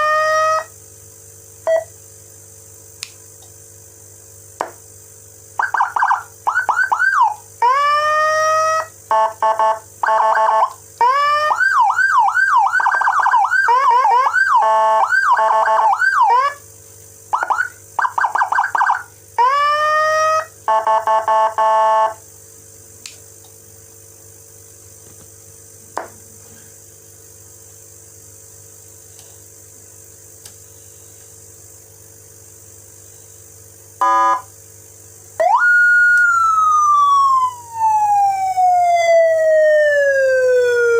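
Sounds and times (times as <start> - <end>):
electronic siren wailing: 0.0 - 0.7, 5.6 - 16.6, 17.3 - 22.2, 34.0 - 34.5, 35.4 - 40.9.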